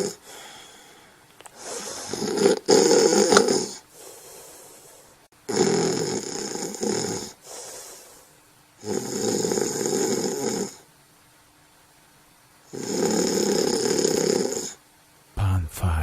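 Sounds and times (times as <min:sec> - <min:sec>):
person snoring: 0:00.0 - 0:00.8, 0:01.6 - 0:03.8, 0:05.5 - 0:07.4, 0:08.8 - 0:10.8, 0:12.7 - 0:14.8
quiet breath: 0:00.0 - 0:02.2, 0:03.6 - 0:05.3, 0:07.2 - 0:08.5.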